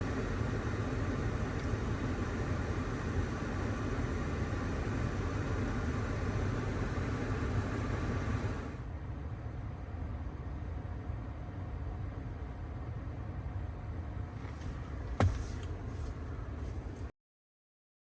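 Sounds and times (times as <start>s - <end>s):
car cabin rushing noise: 14.4s - 16.3s.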